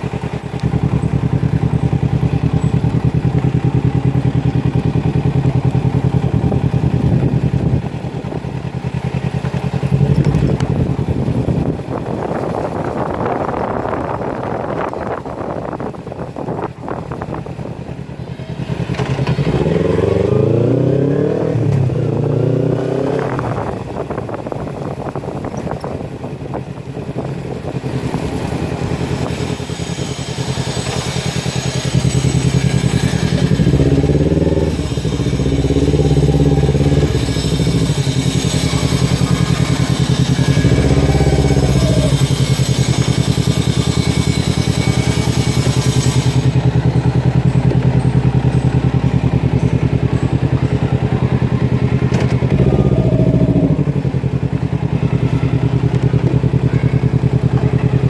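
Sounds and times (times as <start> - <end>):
motorcycle engine revving loudly: 0.0 - 11.7, 18.2 - 24.3, 27.8 - 58.0.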